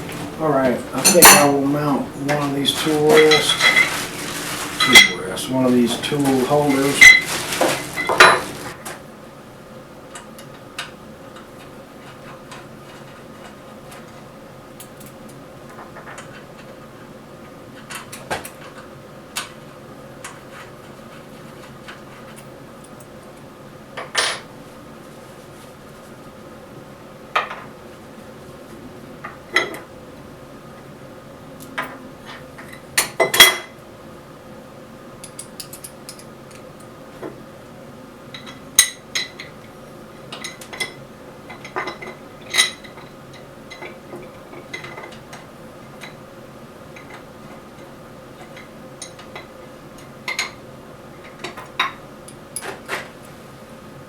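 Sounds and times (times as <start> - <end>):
metal clinks and knocks: 1.0 - 8.7.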